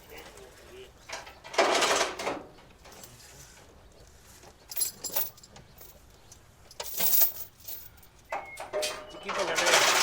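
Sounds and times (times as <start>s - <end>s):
metal chains clinking: 4.7s - 6.0s, 6.7s - 8.2s, 8.8s - 10.0s.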